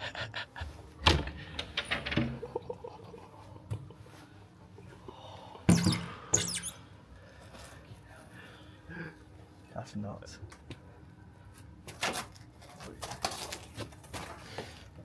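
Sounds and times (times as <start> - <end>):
squeaking against window frame: 5.7 - 6.8.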